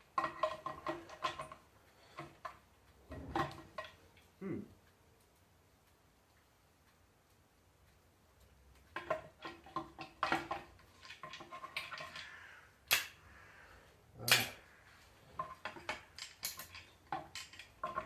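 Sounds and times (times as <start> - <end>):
metal parts clinking and knocking: 15.4 - 18.0.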